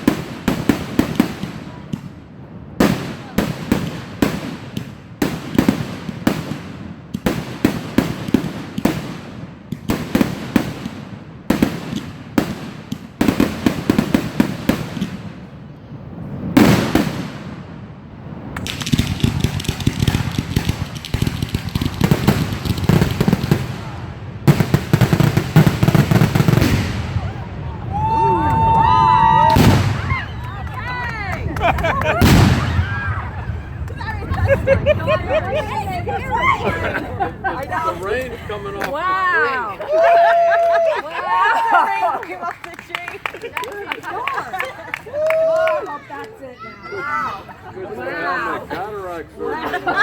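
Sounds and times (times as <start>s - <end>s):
fireworks bangs and crackles: 0.0s - 46.2s.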